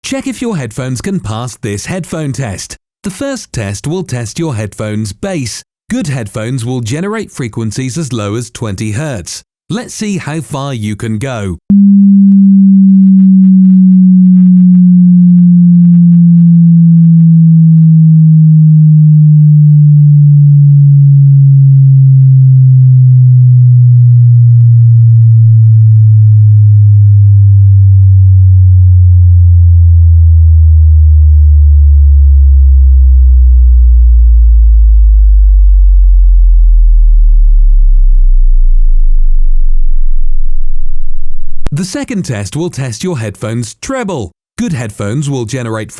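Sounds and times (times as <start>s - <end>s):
sine tone sliding down in pitch: 11.7s - 41.7s.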